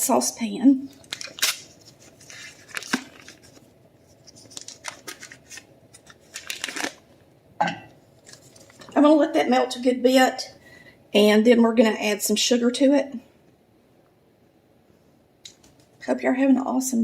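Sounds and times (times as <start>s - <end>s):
paper rustling and tearing: 1.0s - 7.0s.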